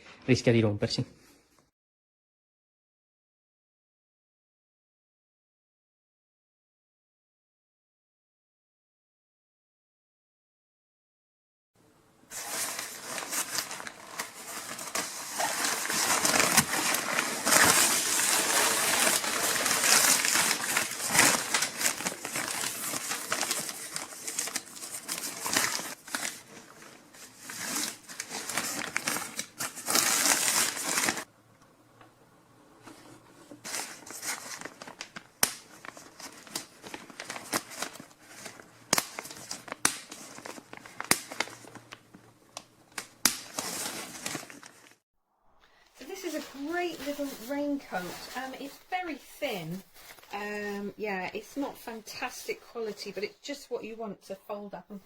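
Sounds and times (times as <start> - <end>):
plastic poncho crinkling: 12.3 - 31.3, 33.6 - 45.0, 45.9 - 53.7.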